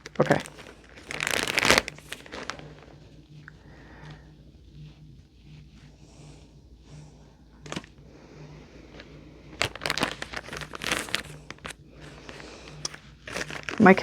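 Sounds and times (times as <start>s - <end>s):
plastic bag crinkling: 0.0s - 4.2s, 7.6s - 8.0s, 8.8s - 14.0s.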